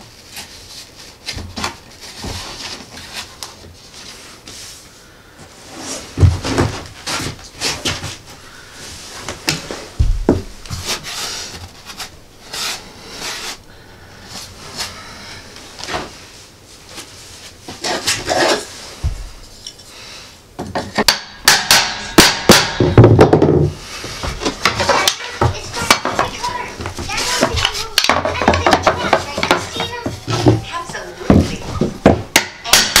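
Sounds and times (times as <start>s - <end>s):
planks scraping and sliding: 23.4s - 32.1s.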